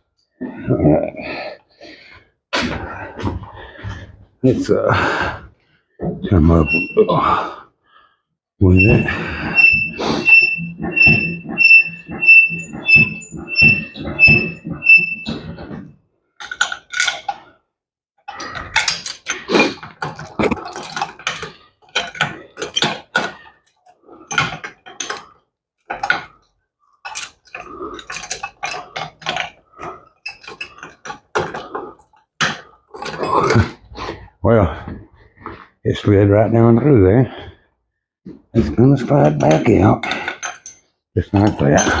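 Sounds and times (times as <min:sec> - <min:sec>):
chain rattling: 0:40.2 - 0:40.8
metal clanks: 0:41.4 - 0:42.0.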